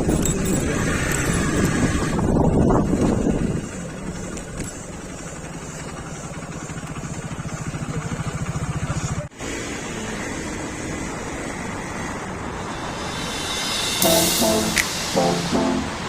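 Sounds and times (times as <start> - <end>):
motorcycle engine running: 0.0 - 9.3.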